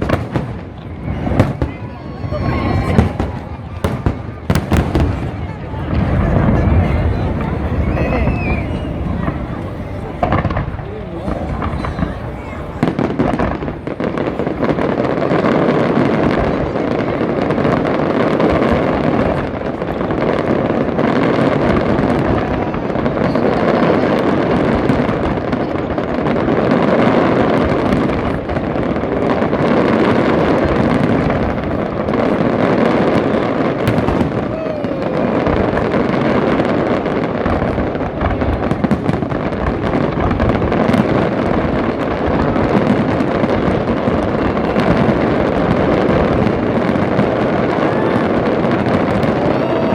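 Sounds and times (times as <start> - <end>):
fireworks bursting and crackling: 0.0 - 49.9.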